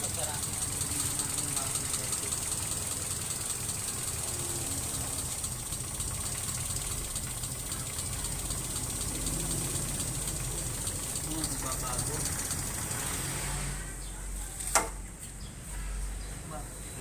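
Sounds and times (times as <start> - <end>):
car engine idling roughly: 0.0 - 13.6.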